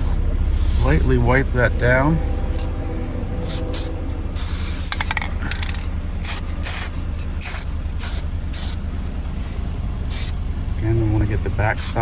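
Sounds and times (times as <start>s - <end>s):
aerosol can spraying: 6.2s - 8.8s.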